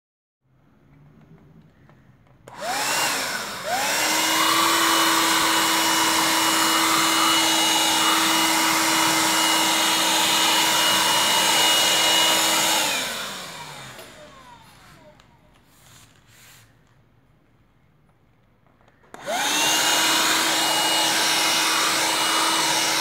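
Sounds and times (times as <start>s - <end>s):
vacuum cleaner running: 2.5s - 16.6s, 19.1s - 23.0s.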